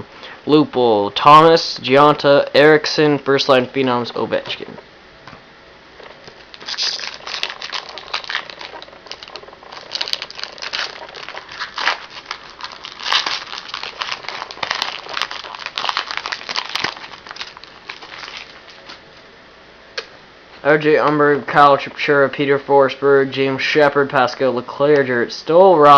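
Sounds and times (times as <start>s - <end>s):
wrapper crinkling and tearing: 6.2s - 19.1s.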